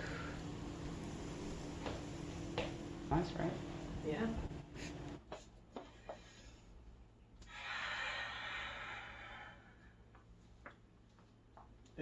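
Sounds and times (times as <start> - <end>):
person breathing out: 7.4 - 10.0.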